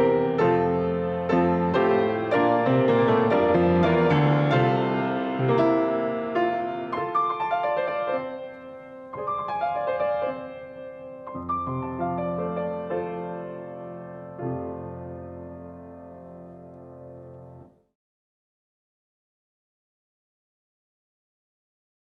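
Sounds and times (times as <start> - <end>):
slow piano music: 0.0 - 17.9.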